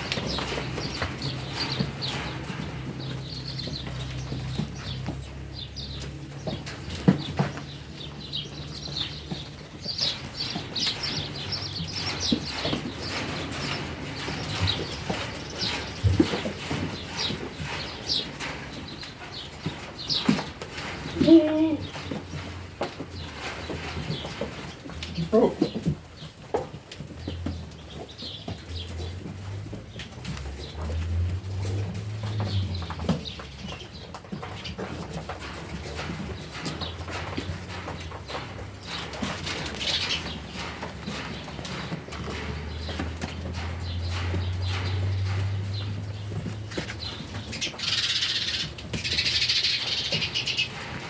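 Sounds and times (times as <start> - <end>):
pigeons cooing: 0.0 - 26.4
sheep moving rustles: 0.0 - 51.0
small birds chirping: 0.0 - 51.0.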